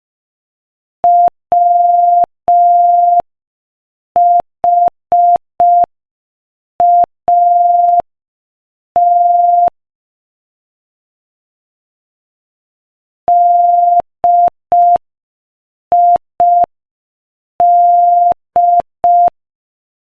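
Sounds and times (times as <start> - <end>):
morse code beeps: 1.1 - 3.2, 4.2 - 5.9, 6.8 - 8.0, 9.0 - 9.7, 13.3 - 15.0, 16.0 - 16.7, 17.6 - 19.3.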